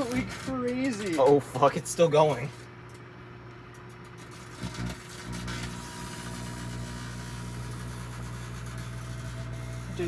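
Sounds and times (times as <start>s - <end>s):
microwave oven humming: 0.0s - 10.0s.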